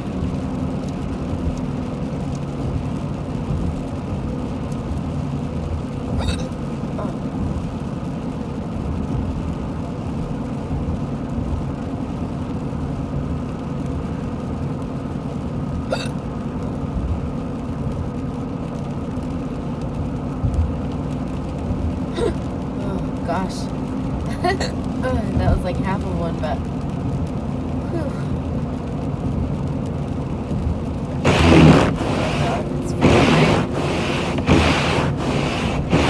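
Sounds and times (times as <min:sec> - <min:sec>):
woman hiccuping: 0:06.2 - 0:07.2, 0:15.9 - 0:16.2, 0:22.2 - 0:23.0, 0:24.3 - 0:24.8, 0:27.9 - 0:28.4
car engine drone: 0:21.0 - 0:36.0.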